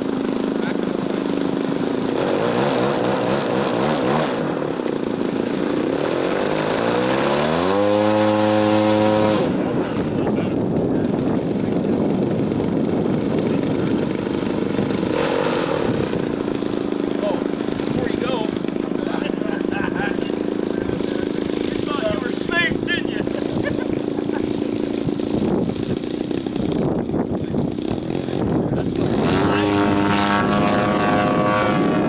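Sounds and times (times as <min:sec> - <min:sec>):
model plane engine: 0:00.0 - 0:32.0
wind noise on microphone: 0:07.8 - 0:18.8, 0:20.5 - 0:32.0.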